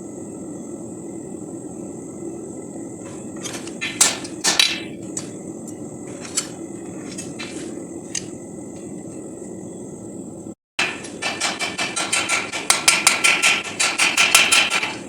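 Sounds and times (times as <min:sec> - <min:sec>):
thin high whine: 0:00.0 - 0:11.1
background hum: 0:00.0 - 0:15.0
rapid hammering: 0:10.8 - 0:15.0.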